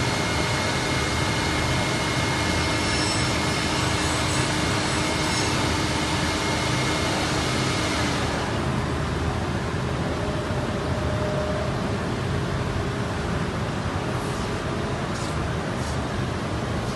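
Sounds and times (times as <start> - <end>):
machine high whine: 0.0 - 12.1.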